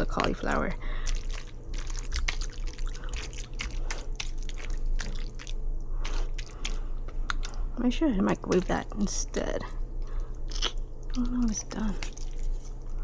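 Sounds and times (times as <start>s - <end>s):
pops and drips: 0.0s - 5.6s
food bubbling in a pot: 0.0s - 10.0s.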